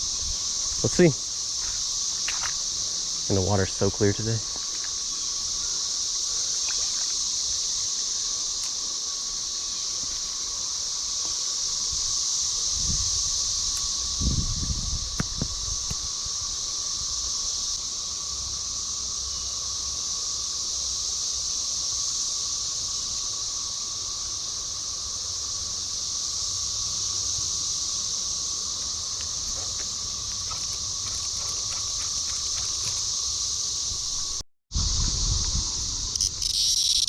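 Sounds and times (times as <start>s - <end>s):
cicadas droning: 0.0s - 37.0s
faint ticks and rustles: 0.4s - 12.1s, 28.9s - 33.6s.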